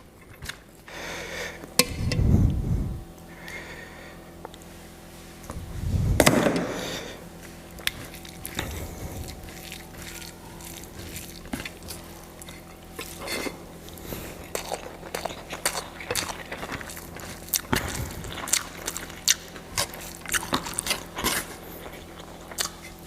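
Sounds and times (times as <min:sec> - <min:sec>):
faint steady hum: 0:00.0 - 0:23.0
wet squishing of food: 0:07.0 - 0:23.0
chewing: 0:07.3 - 0:23.0.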